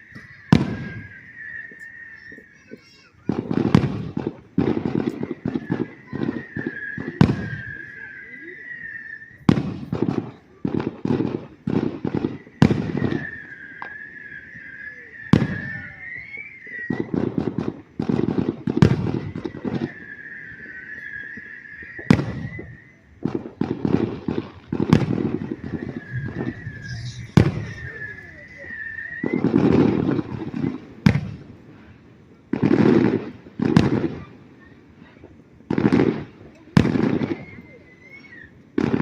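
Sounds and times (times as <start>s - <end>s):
high whistle-like tone: 0.0s - 3.0s, 5.1s - 9.9s, 12.1s - 17.2s, 19.0s - 23.2s, 24.9s - 30.8s, 37.2s - 38.6s
fireworks banging: 0.0s - 39.0s
fireworks crackling: 0.0s - 39.0s.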